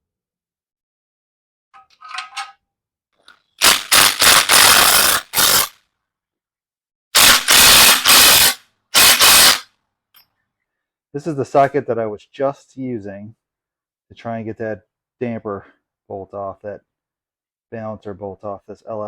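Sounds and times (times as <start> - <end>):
impact wrench hammering: 3.6 - 5.7, 7.2 - 9.6.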